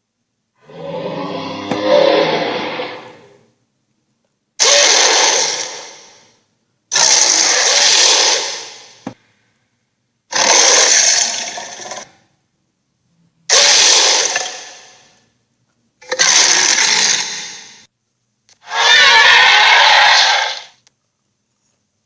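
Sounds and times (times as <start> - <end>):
dragon roar: 0.6 - 3.4, 18.6 - 20.8
harsh rasping dragon roar: 0.6 - 3.4, 4.6 - 6.2, 6.9 - 8.8, 16.1 - 17.7, 18.6 - 20.8.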